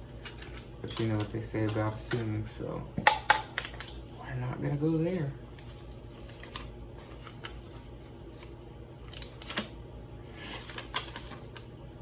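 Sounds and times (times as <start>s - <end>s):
faint steady hum: 0.0s - 12.0s
paper and packaging rustling: 0.2s - 2.2s, 4.6s - 11.7s.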